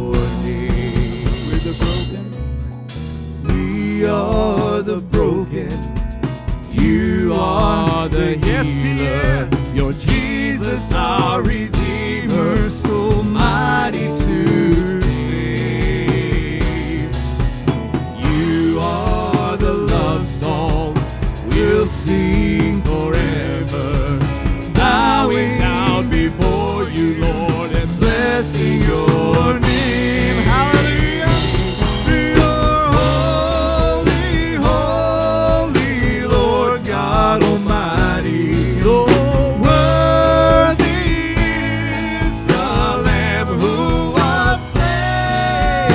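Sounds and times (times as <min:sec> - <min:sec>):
drum kit: 0:00.0 - 0:45.9
worship band music: 0:00.0 - 0:45.9.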